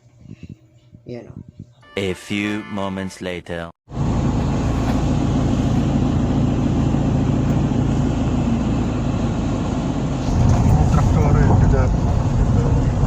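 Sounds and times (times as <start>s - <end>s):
vehicle engine running: 3.9s - 13.0s.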